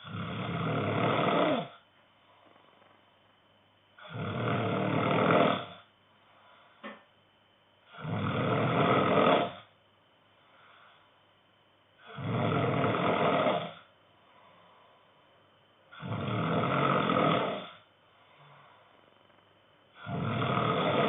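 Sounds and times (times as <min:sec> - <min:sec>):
man snoring: 0:00.0 - 0:01.8, 0:04.0 - 0:05.9, 0:07.9 - 0:09.7, 0:12.0 - 0:13.9, 0:15.9 - 0:18.6, 0:20.0 - 0:21.0
quiet breathing: 0:00.0 - 0:04.2, 0:05.6 - 0:08.2, 0:09.5 - 0:12.4, 0:13.3 - 0:21.0.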